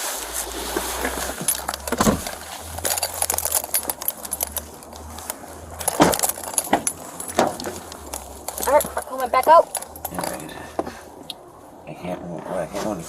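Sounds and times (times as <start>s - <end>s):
small metal objects jingling: 1.0s - 10.8s.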